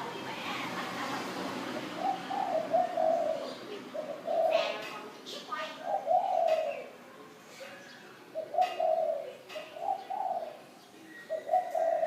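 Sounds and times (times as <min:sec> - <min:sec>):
dove cooing: 0:01.7 - 0:07.0, 0:08.3 - 0:12.0.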